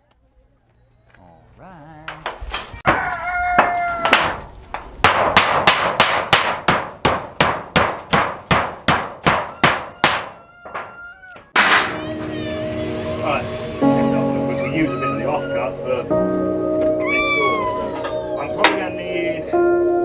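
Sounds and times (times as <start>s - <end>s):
hammer driving nails: 5.0s - 10.9s, 11.6s - 12.2s.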